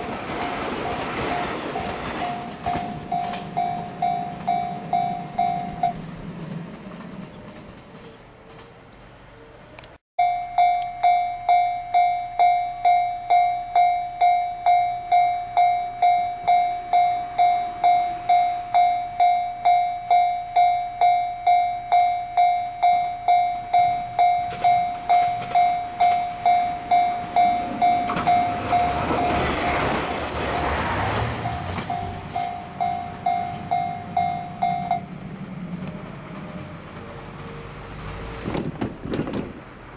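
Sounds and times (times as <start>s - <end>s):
level crossing warning bell ringing: 0.0s - 6.0s, 10.2s - 29.8s, 31.4s - 35.2s
train rushing past: 0.0s - 9.7s, 24.6s - 39.9s.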